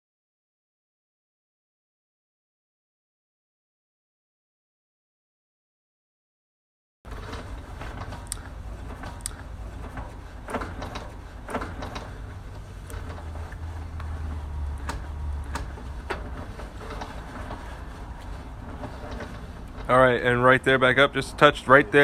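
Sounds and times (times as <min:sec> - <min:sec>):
cable clicks and knocks: 0:07.1 - 0:20.1
steady low hum: 0:07.1 - 0:22.0.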